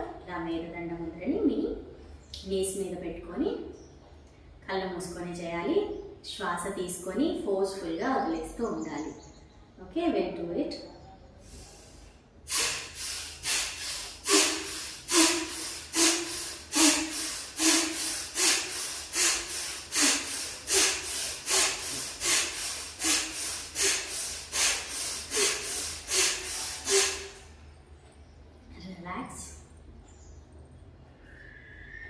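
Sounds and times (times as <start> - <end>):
rapid forceful nasal breathing: 11.4 - 27.7.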